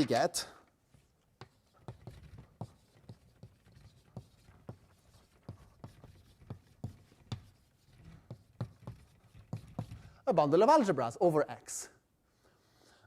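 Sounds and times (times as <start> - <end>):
chalk tapping on blackboard: 0.9 - 10.2.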